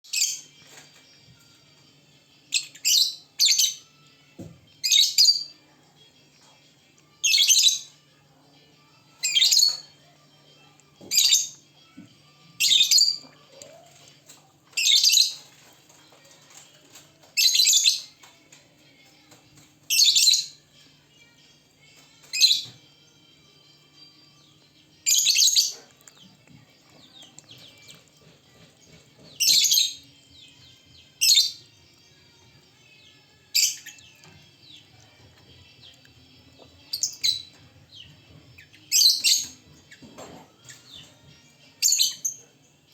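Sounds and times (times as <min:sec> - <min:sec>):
lovebirds chattering: 0:11.0 - 0:18.3, 0:25.1 - 0:31.8, 0:33.4 - 0:42.6.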